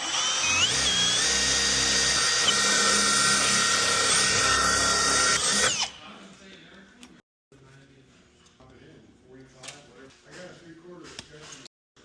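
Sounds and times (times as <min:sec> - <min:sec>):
power drill whining: 0:00.0 - 0:06.1.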